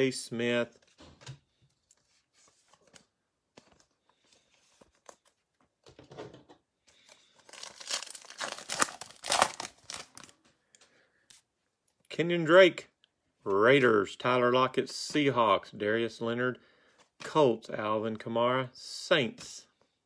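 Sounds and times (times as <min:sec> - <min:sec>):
wrapper crinkling and tearing: 0:07.0 - 0:10.4.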